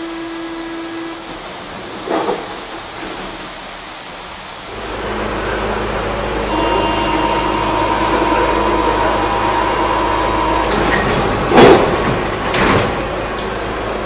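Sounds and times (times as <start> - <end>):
train hum: 0.0 - 14.0
door-closing warning beep: 6.5 - 11.4
sliding doors shutting with thud: 9.3 - 14.0.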